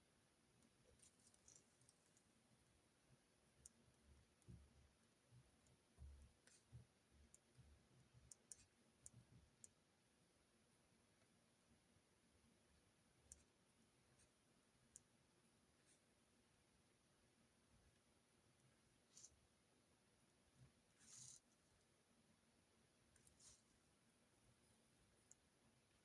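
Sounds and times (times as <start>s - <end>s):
handwriting clicks and taps: 3.1s - 9.8s, 13.2s - 15.2s.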